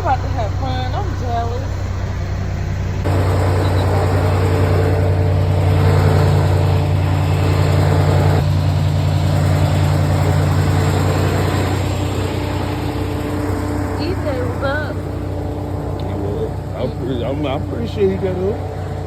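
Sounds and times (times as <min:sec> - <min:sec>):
vehicle engine drone: 0:00.0 - 0:19.0.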